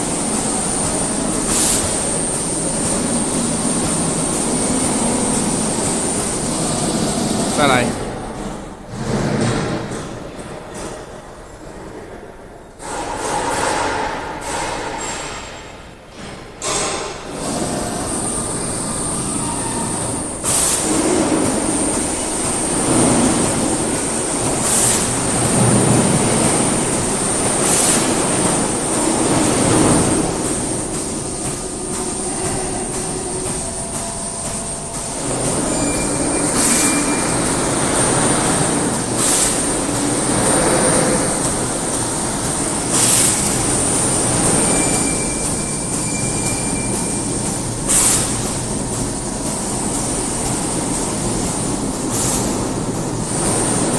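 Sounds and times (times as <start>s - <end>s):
short hissing bursts: 1.4s - 3.2s, 20.4s - 21.2s, 26.2s - 33.3s, 38.4s - 39.9s, 47.9s - 48.5s, 52.1s - 52.6s
high machine whine: 16.7s - 53.9s.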